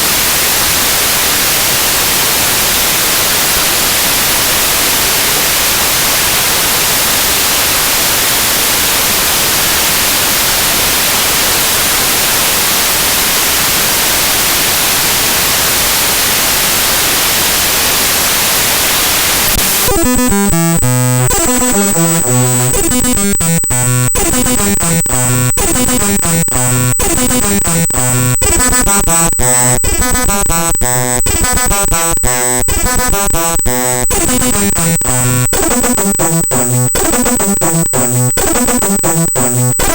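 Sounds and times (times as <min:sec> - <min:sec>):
high steady whine: 0:17.2 - 0:39.9
buzzy repeating electronic tones: 0:19.5 - 0:39.9.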